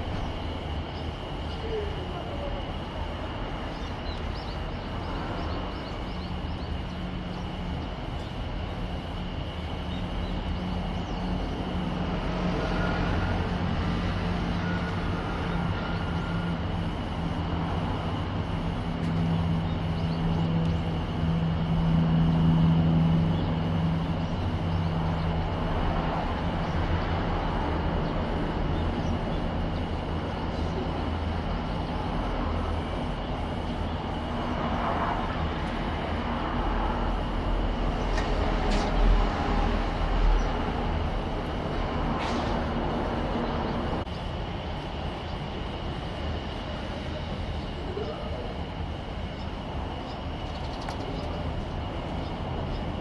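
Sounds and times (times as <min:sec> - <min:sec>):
jet aircraft engine rumble: 0:00.0 - 0:53.0.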